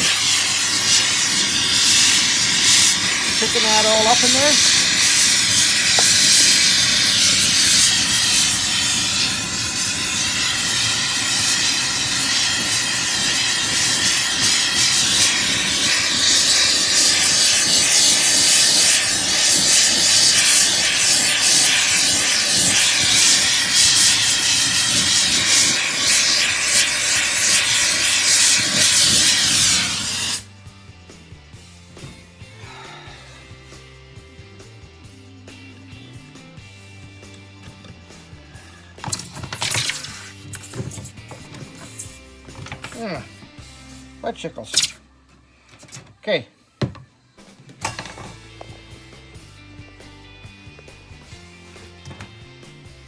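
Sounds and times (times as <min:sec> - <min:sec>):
torch flame hissing: 0:00.0 - 0:30.6, 0:39.0 - 0:43.3, 0:44.7 - 0:45.0.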